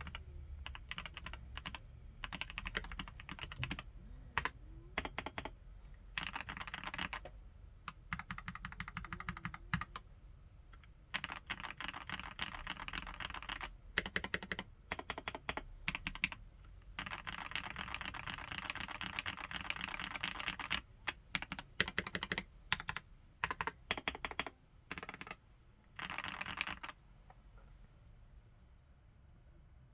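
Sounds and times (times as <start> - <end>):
mechanical keyboard typing: 0.0 - 5.6, 6.2 - 7.3, 7.9 - 10.0, 11.1 - 16.4, 17.0 - 25.4, 26.0 - 27.0.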